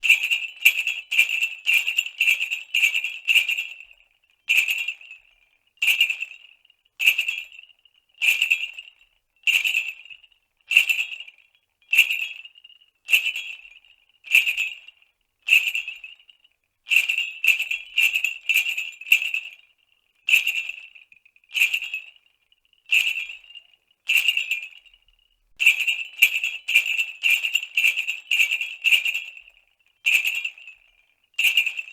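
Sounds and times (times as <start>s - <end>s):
sleigh bells jingling: 0.0s - 5.2s, 22.9s - 31.9s.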